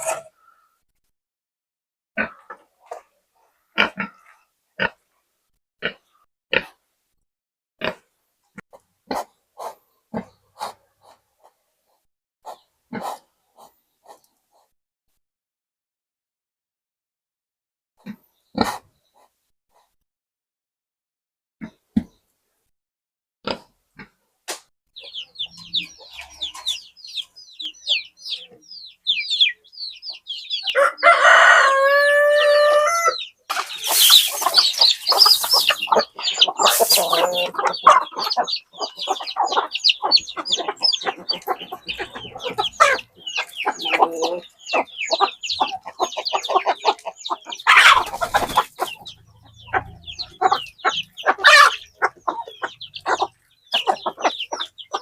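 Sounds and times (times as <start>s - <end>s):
chickens clucking: 0.0s - 0.5s, 2.2s - 5.0s, 8.6s - 14.7s, 18.0s - 20.0s, 23.5s - 55.0s
rooster crowing: 30.7s - 33.2s.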